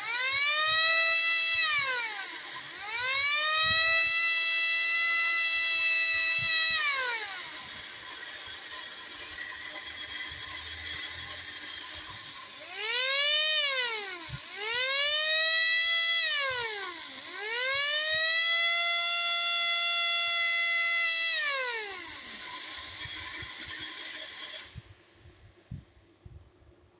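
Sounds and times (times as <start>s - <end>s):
toy siren wailing: 0.0s - 7.5s, 12.8s - 22.1s
small motor whirring: 0.0s - 25.0s.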